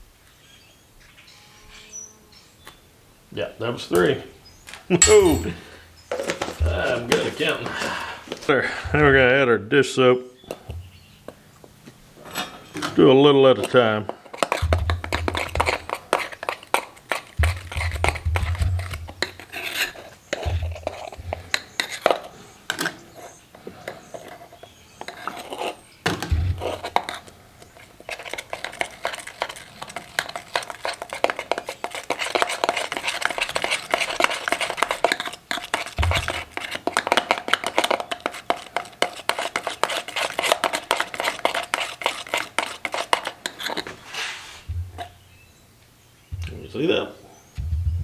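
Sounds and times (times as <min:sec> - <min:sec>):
low bumps: 0:08.8 - 0:09.4, 0:44.0 - 0:45.4, 0:46.3 - 0:46.9, 0:47.5 - 0:48.0
utensil scraping a container: 0:12.2 - 0:45.4.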